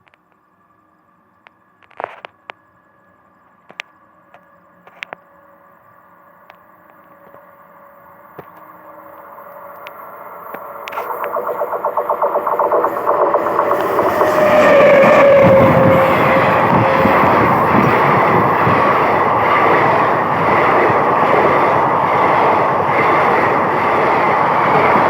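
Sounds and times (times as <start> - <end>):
train rumbling: 9.3 - 25.0.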